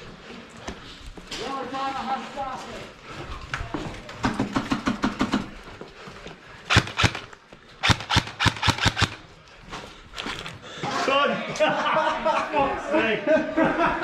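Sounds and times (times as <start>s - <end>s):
airsoft guns firing: 6.7s - 9.3s.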